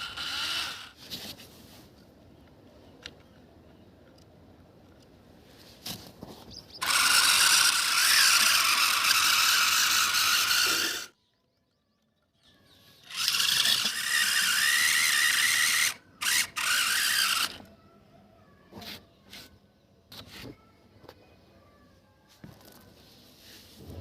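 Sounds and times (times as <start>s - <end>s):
toy motor and gears whirring: 0.0s - 1.2s, 6.8s - 11.2s, 12.9s - 17.7s.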